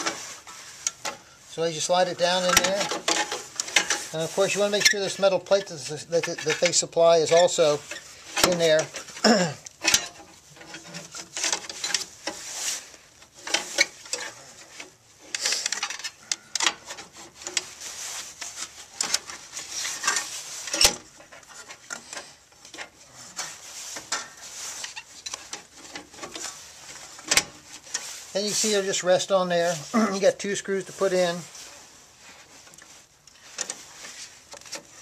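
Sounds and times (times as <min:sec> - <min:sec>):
metal parts scraping and clicking: 0:02.4 - 0:12.5, 0:13.3 - 0:28.2.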